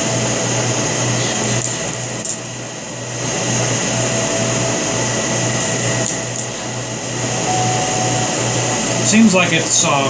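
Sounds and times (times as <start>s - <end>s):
low hum: 0.0s - 9.8s
knife handles clicking: 1.3s - 2.5s.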